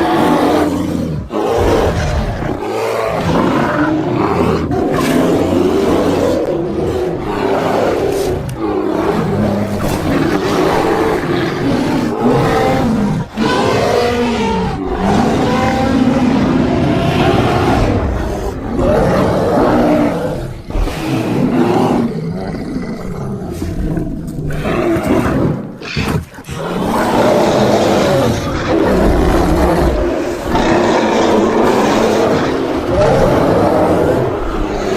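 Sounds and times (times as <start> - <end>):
panda growling and roaring: 0.0 - 34.9.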